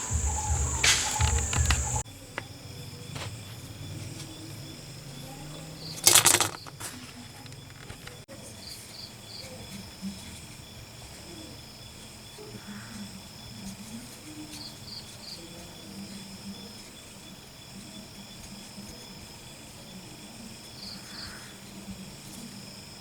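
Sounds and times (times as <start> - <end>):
loud hiss: 0.0 - 2.0
insects chirring: 0.0 - 23.0.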